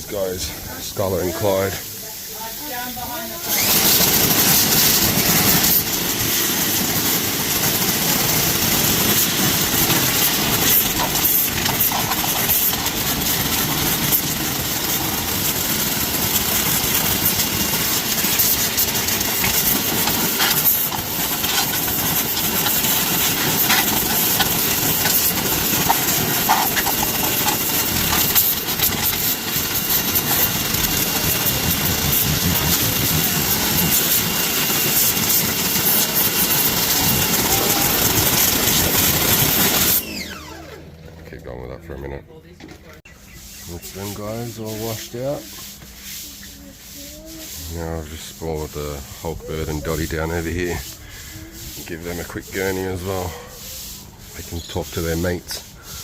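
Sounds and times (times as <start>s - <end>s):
pressure washer spraying: 0.0s - 40.8s, 43.1s - 56.0s.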